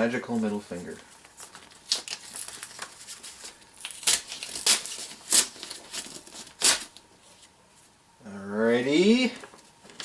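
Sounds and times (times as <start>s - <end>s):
packaging crinkling: 0.3s - 7.1s
packaging ripping: 1.2s - 7.0s.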